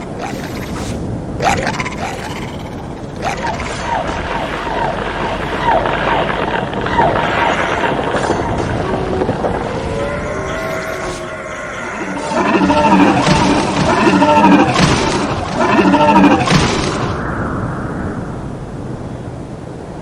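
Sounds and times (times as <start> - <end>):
strong gusting wind: 0.0 - 20.0.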